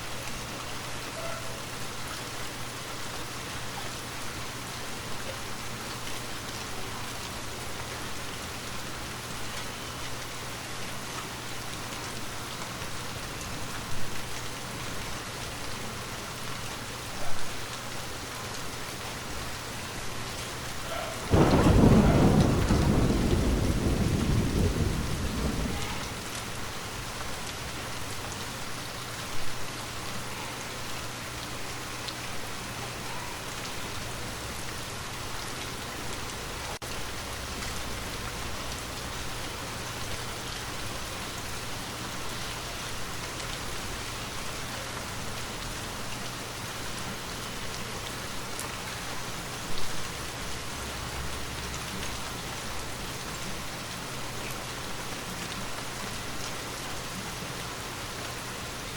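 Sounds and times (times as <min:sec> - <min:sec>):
steady rain falling: 0:00.0 - 0:58.9
low thunder rumble: 0:20.9 - 0:26.4.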